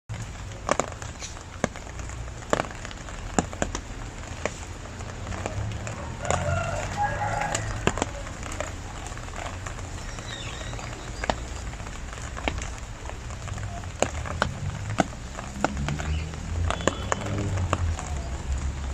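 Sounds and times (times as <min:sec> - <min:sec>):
rain falling: 0:00.1 - 0:18.9
bird calling: 0:10.0 - 0:11.8.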